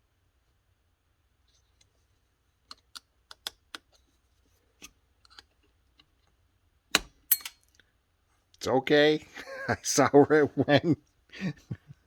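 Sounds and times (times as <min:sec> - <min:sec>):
clicks of small tools and parts: 0:04.8 - 0:07.9.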